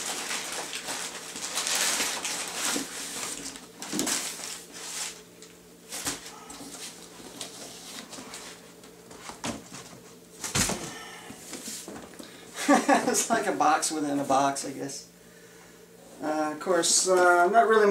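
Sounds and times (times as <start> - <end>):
cardboard rustling and scraping: 0.0 - 12.1.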